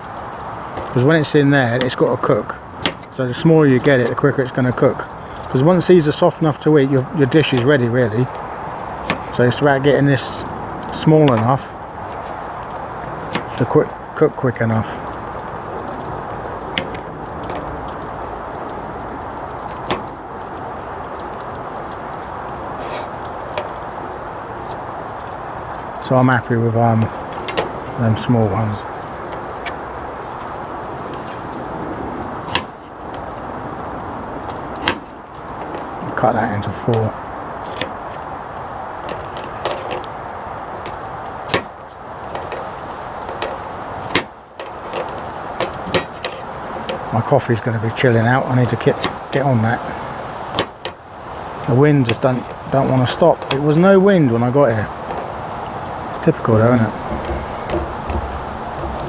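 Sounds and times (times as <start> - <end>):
wind noise: 0.0 - 59.0
wind rushing: 55.2 - 59.0.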